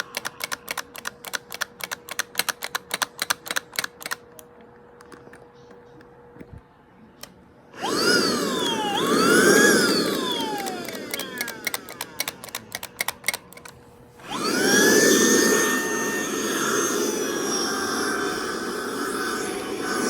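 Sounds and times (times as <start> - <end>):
vacuum cleaner motor whining: 7.8 - 13.3, 14.2 - 20.0
rapid clicking: 7.9 - 13.7.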